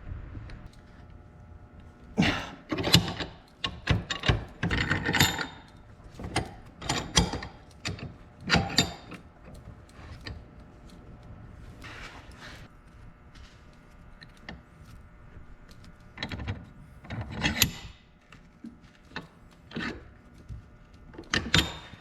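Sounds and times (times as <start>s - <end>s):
metal parts clicking and rattling: 2.2s - 10.4s, 21.2s - 22.0s.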